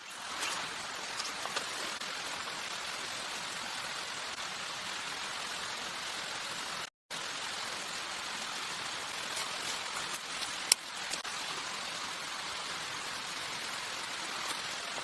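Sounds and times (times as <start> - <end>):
steady rain hiss: 0.0 - 15.0
raindrop ticks: 9.1 - 11.3.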